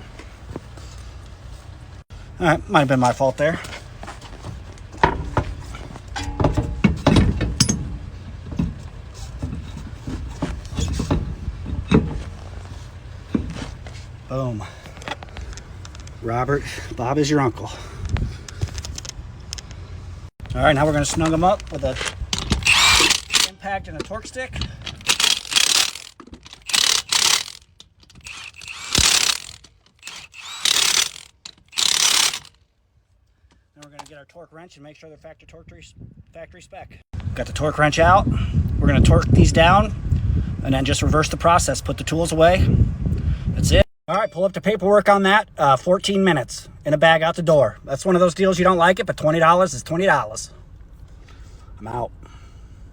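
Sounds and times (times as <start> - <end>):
metal clanks and knocks: 4.9 - 12.5
impact wrench hammering lug nuts: 6.2 - 8.1, 22.4 - 23.5, 25.0 - 32.5
steady low rumble: 37.2 - 43.8.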